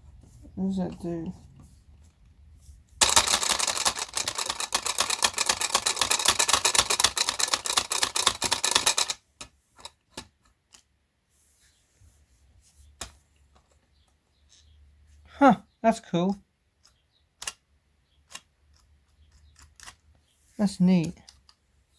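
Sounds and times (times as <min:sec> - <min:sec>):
rapid even clicking: 0:03.0 - 0:09.2.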